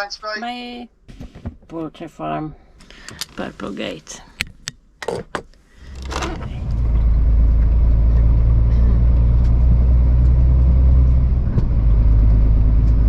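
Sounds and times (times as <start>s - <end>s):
lorry diesel engine droning: 5.8s - 13.0s.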